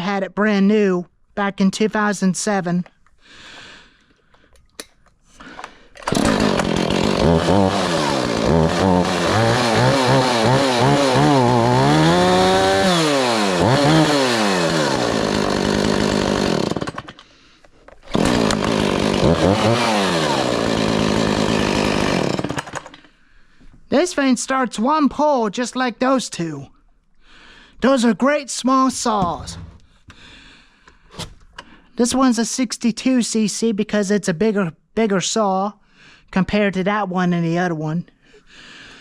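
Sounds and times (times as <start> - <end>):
chainsaw engine revving: 6.0 - 17.2, 18.0 - 23.0.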